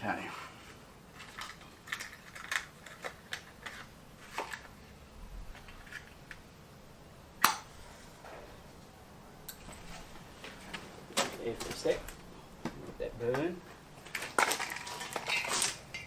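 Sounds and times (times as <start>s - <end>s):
matches clicking and scraping: 1.2s - 4.7s, 14.0s - 16.0s.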